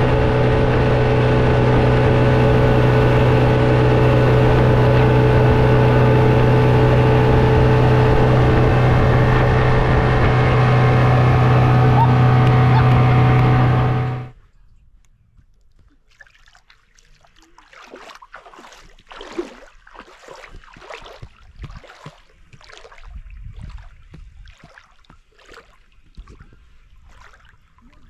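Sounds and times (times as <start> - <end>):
outboard motor running: 0.0 - 14.4
water lapping and sloshing: 15.4 - 28.0.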